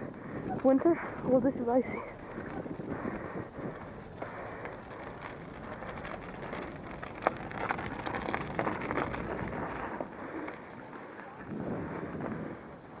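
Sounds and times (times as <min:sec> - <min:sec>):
bicycle tyres rolling on ice: 0:00.0 - 0:13.0
ice crackling and clicking: 0:04.0 - 0:11.2
wind on microphone: 0:11.4 - 0:13.0.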